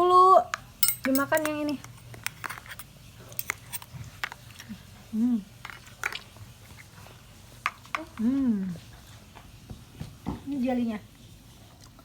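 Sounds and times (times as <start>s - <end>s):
spoons clicking against dishes: 0.8s - 4.4s.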